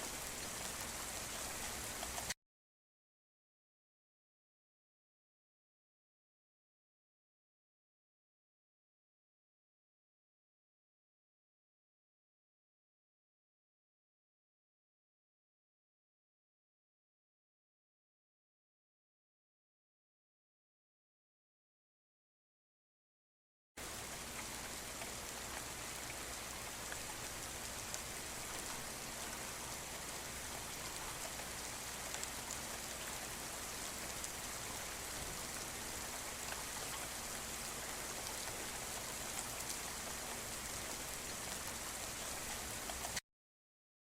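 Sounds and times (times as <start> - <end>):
faint raindrop ticks: 0.0 - 2.4, 23.8 - 43.2
steady rain hiss: 0.0 - 2.4, 23.8 - 43.2.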